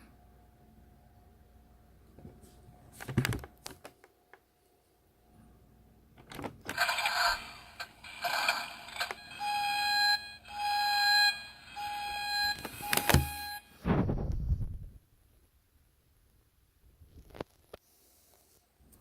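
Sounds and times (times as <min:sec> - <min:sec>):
handling clicks and thump: 0:06.2 - 0:06.8.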